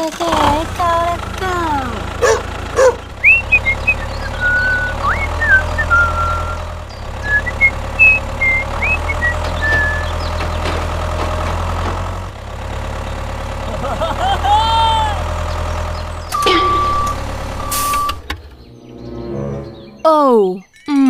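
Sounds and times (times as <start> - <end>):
motor humming: 0.0 - 14.4, 15.2 - 18.6
high chirps and whistles: 3.2 - 10.4.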